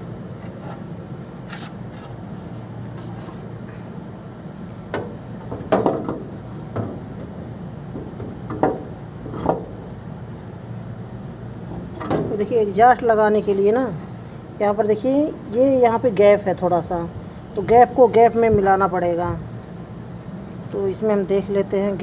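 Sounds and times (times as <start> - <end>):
steady low hum: 0.0 - 22.0
knocks and scrapes of fan blade: 0.4 - 3.6, 4.9 - 13.7.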